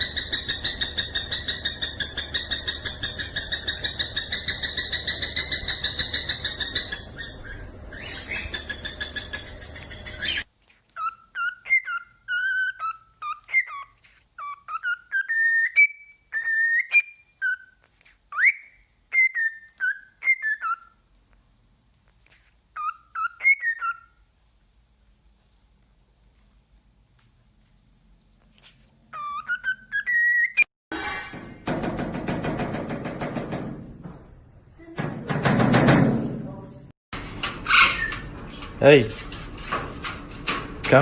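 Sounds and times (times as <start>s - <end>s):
parrot whistling: 0.0s - 21.0s, 22.7s - 24.2s, 29.1s - 30.7s.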